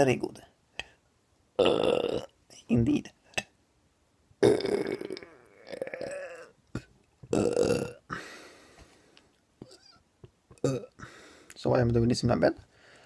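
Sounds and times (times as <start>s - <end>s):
man burping loudly: 1.6s - 2.4s, 4.4s - 8.4s, 10.6s - 11.1s.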